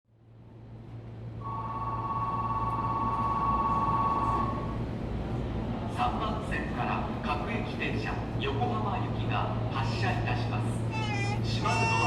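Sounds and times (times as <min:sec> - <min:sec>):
electric train humming: 0:00.3 - 0:05.9.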